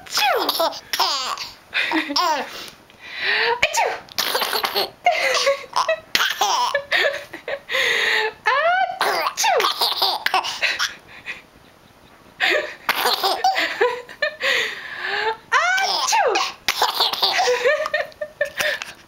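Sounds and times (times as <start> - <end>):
baby laughing: 0.1 - 2.5, 4.2 - 6.8, 8.9 - 11.0, 12.4 - 13.8, 15.5 - 19.0.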